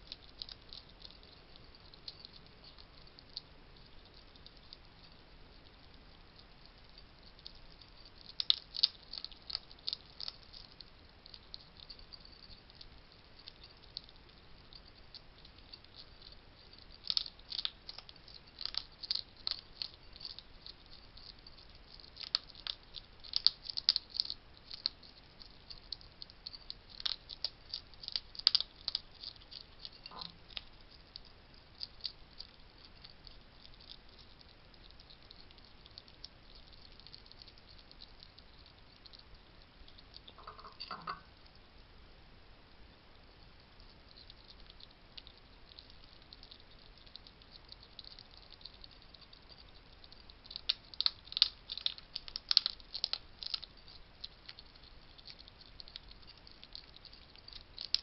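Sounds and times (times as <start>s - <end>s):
hedgehog crunching dry food: 0.0s - 41.3s, 43.4s - 58.0s.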